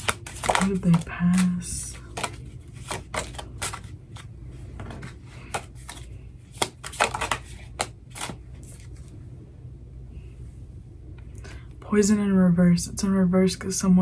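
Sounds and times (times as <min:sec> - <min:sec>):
cards being shuffled: 0:00.0 - 0:09.1
steady low hum: 0:00.0 - 0:14.0.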